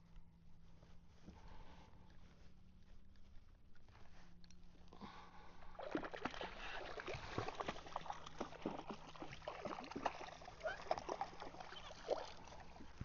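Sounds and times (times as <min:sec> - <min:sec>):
water splashing against kayak: 0:05.7 - 0:13.0.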